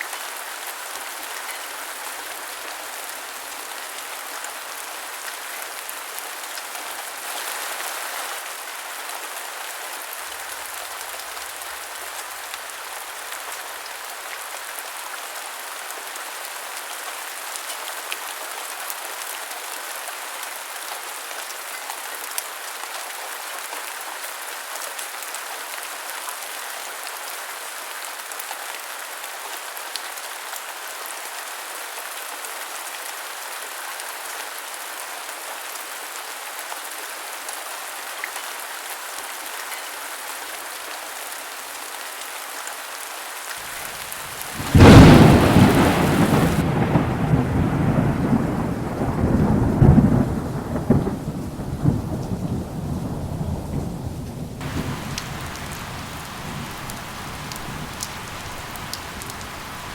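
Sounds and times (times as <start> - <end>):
heavy rain: 0.0 - 59.9
thunderclap and rumble: 44.3 - 59.9.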